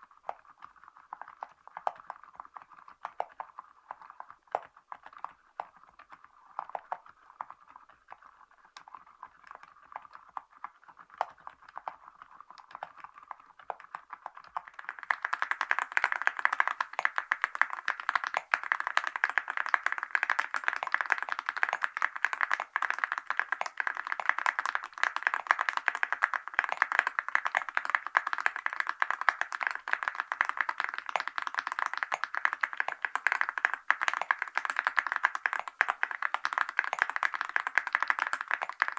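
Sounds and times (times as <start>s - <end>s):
mechanical keyboard typing: 14.8s - 38.9s.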